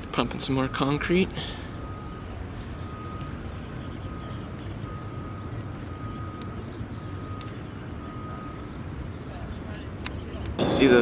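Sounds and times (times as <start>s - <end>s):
rumble of machinery and traffic: 0.0s - 11.0s
reverse alarm beeping: 0.4s - 8.8s.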